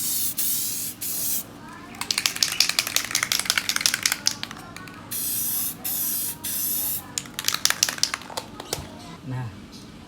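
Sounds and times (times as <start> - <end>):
spray can hissing: 0.0 - 8.3
spray can being shaken: 0.0 - 8.7.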